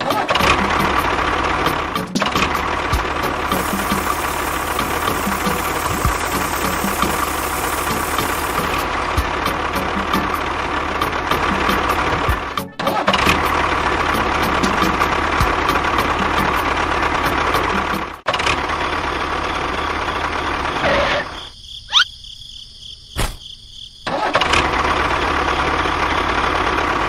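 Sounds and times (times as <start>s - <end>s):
small electric motor whirring: 3.3s - 8.9s.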